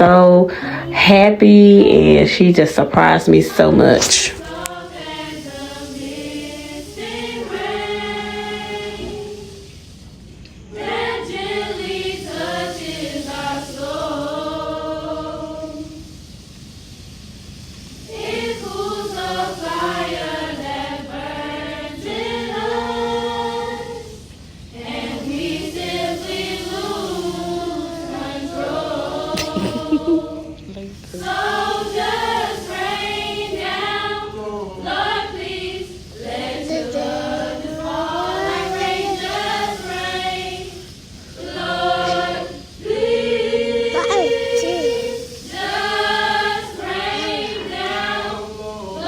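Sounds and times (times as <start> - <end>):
singers' breaths: 0.0 - 1.1, 35.7 - 48.6
children's choir singing: 0.0 - 9.8, 10.6 - 16.2, 18.0 - 49.0.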